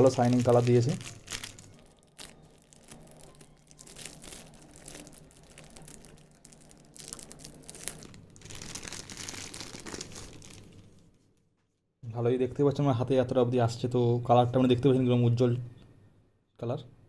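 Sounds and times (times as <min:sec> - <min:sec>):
packaging crinkling and rustling: 0:00.0 - 0:11.2.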